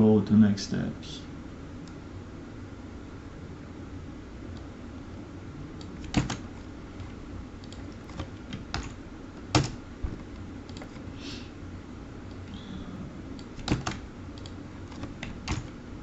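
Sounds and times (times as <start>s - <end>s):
steady low hum: 0.0s - 16.0s
keyboard keystrokes: 5.8s - 9.8s, 13.4s - 15.8s.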